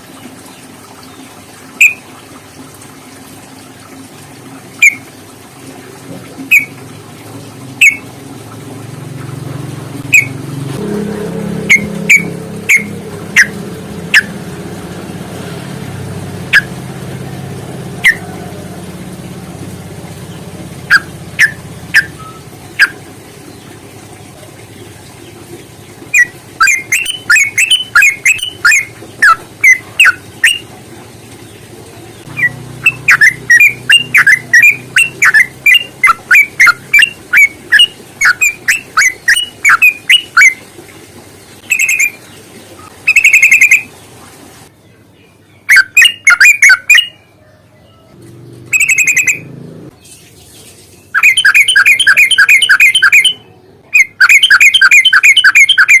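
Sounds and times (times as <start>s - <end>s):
low steady rumble: 1.8s - 45.7s
bird calling: 6.4s - 6.8s, 7.8s - 8.1s, 10.0s - 10.4s, 11.6s - 14.4s, 16.5s - 16.8s, 18.0s - 18.6s, 20.3s - 23.8s, 24.8s - 30.7s, 31.4s - 40.6s, 41.6s - 43.9s, 45.6s - 48.1s, 48.7s - 49.5s, 51.0s - 56.0s.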